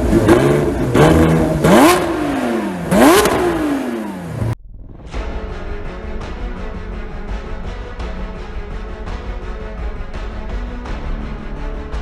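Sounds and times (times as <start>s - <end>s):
car engine revving: 0.0s - 10.4s
music: 4.9s - 12.0s.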